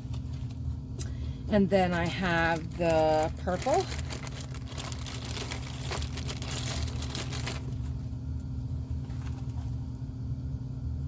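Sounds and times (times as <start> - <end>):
vinyl sheeting crinkling: 2.1 - 8.1.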